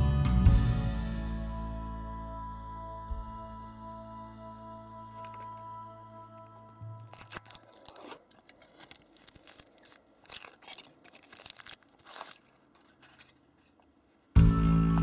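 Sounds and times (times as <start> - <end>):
foil wrapper tearing and crinkling: 6.8 - 13.8.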